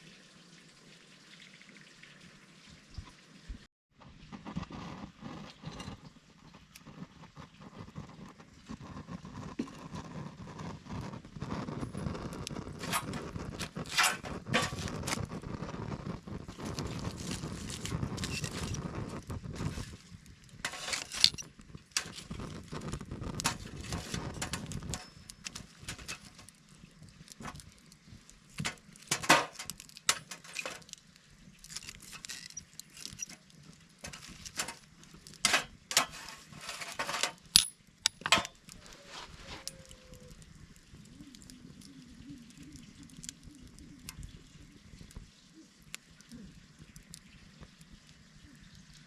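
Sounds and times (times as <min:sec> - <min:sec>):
small hard objects clinking: 0:11.5 - 0:15.4, 0:16.4 - 0:39.0.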